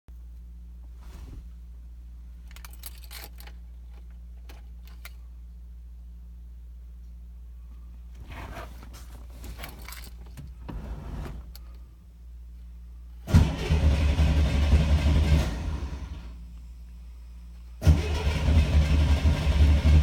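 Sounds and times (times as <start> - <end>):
light clicks and rattles: 2.4 - 5.3
car engine cranking: 13.3 - 16.3, 17.8 - 20.0.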